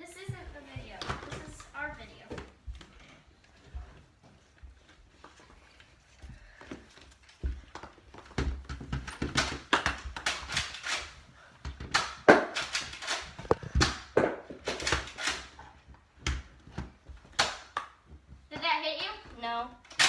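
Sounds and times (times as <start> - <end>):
foam darts striking walls: 11.7 - 15.4.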